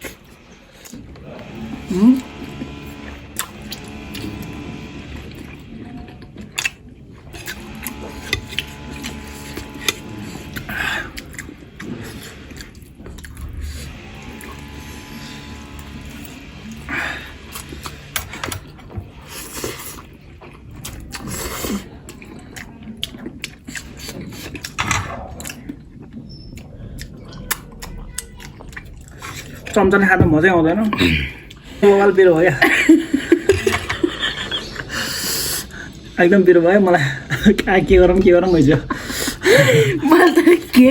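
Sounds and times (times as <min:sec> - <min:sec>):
chewing food: 0:00.0 - 0:30.2.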